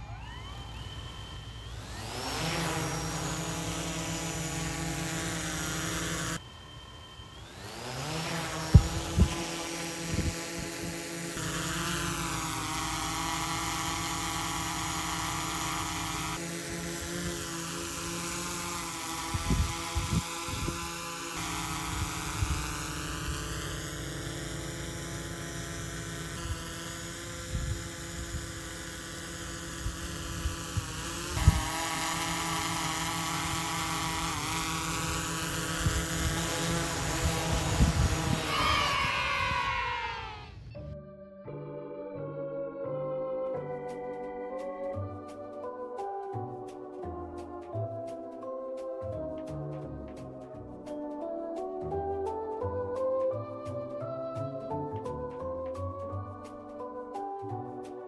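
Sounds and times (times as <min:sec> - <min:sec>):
drone propeller whine: 0:00.0 - 0:40.8.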